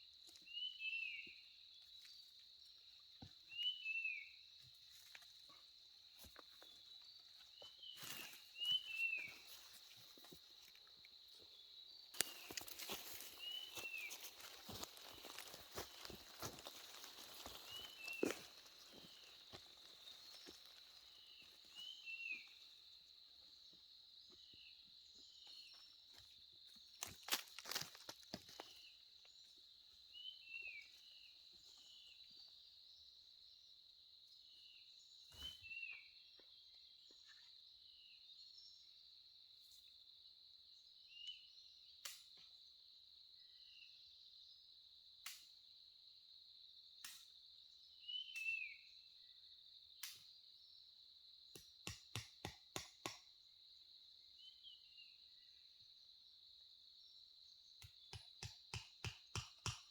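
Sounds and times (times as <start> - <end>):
insects droning: 0.0 - 59.9
bird chirps: 3.5 - 4.4, 6.6 - 9.8, 13.3 - 16.2, 17.6 - 22.7, 34.6 - 37.5, 48.0 - 48.9.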